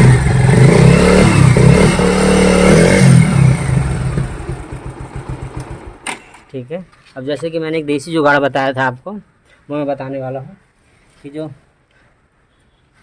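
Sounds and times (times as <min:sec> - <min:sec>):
motorcycle engine revving: 0:00.0 - 0:06.1.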